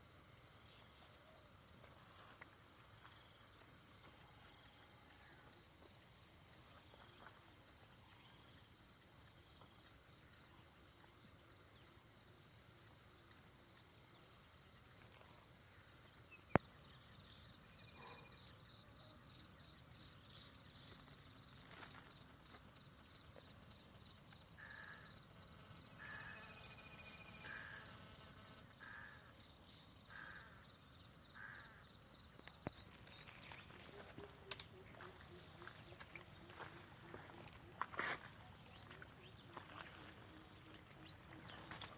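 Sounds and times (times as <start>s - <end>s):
insects trilling: 0.0s - 41.9s
high insect buzz: 20.8s - 29.2s
bird calls: 32.4s - 41.9s.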